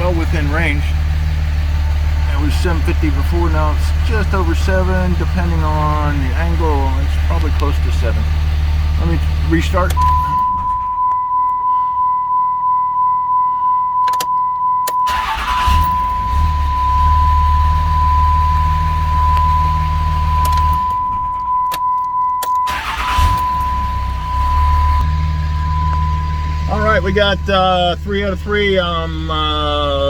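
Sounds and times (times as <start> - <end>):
diesel engine starting and running: 0.0 - 11.5, 14.8 - 30.0
steady electronic tone: 23.2 - 30.0.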